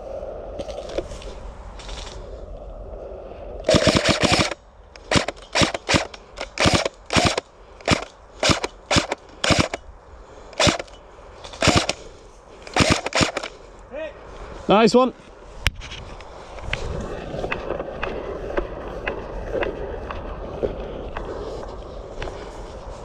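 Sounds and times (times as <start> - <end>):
airsoft rifle firing: 3.7 - 9.8, 10.6 - 11.0, 11.6 - 12.0, 12.7 - 13.6.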